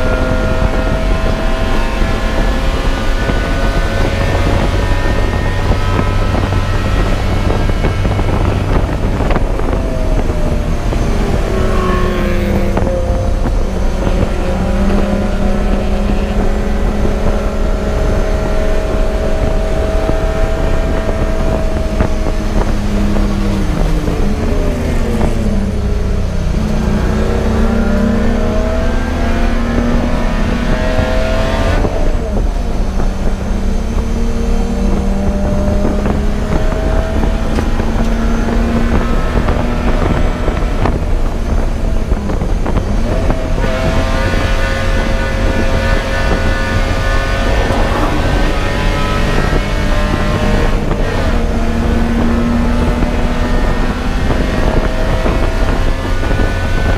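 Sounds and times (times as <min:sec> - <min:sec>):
race car engine running hard: 0:00.0 - 0:56.9.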